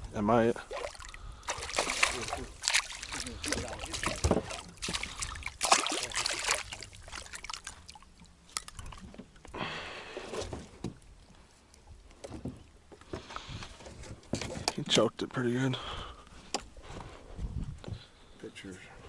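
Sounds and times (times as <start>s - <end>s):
water sloshing against hull: 0.4s - 14.9s
splash: 0.6s - 8.0s
knocks and clatter in a boat: 1.9s - 7.3s, 10.2s - 11.1s, 12.1s - 15.1s, 17.4s - 18.1s.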